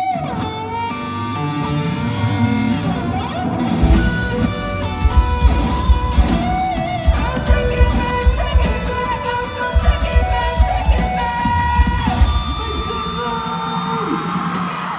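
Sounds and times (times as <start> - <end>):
electric guitar lines: 0.0 - 14.9
heavy drum beats: 3.6 - 14.9.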